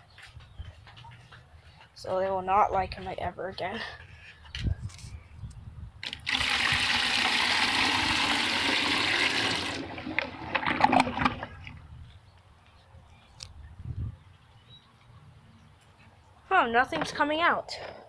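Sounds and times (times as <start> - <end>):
toilet flushing water rush: 6.0 - 11.5
water splashing and gurgling: 6.2 - 11.8.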